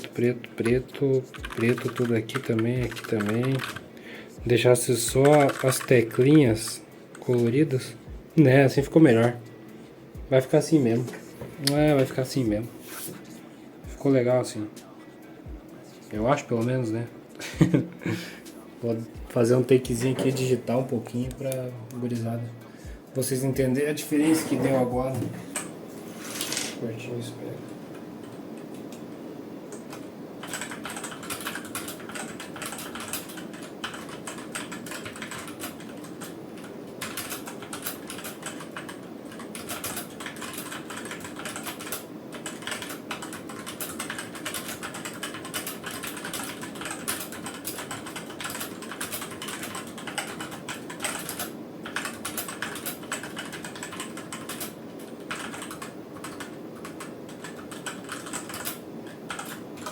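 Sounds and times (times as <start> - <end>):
mechanical keyboard key clacks: 5.2 - 5.9.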